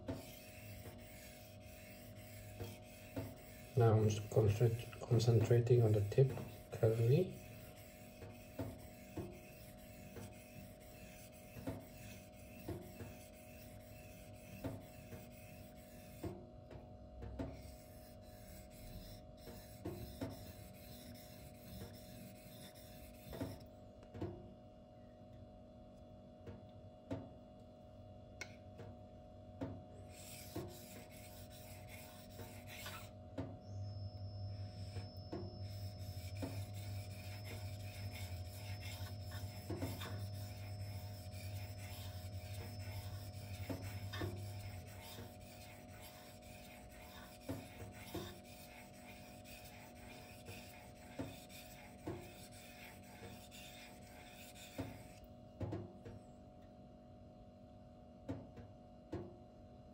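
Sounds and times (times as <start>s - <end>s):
knife rasping on whetstone: 0.0s - 16.3s, 17.5s - 23.6s, 30.1s - 33.2s, 33.9s - 55.2s
low hum: 30.1s - 48.1s.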